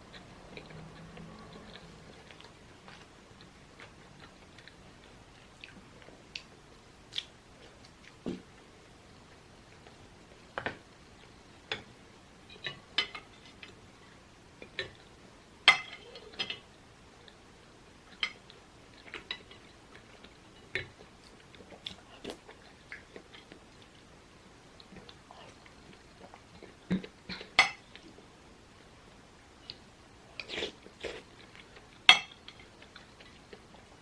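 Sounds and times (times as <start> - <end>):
chewing: 0.1 - 6.5.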